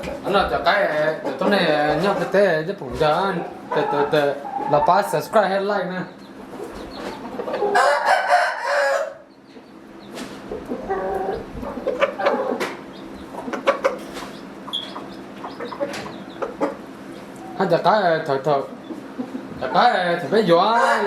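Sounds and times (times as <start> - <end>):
rooster clucking: 0.0 - 5.6, 6.4 - 17.8, 18.6 - 21.0
rooster crowing: 7.6 - 9.3, 20.6 - 21.0.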